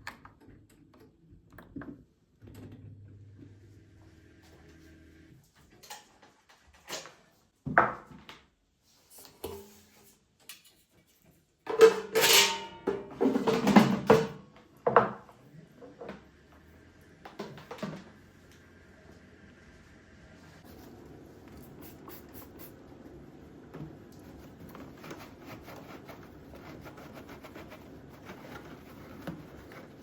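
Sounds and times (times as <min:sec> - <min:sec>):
clattering with ringing: 0:11.8 - 0:14.3.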